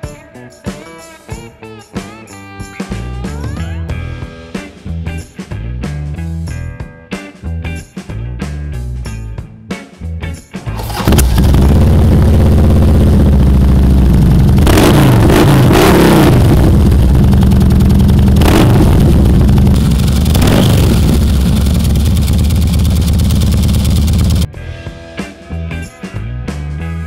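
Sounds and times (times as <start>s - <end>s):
motorcycle engine idling: 10.7s - 24.5s
motorcycle engine revving: 10.7s - 24.5s.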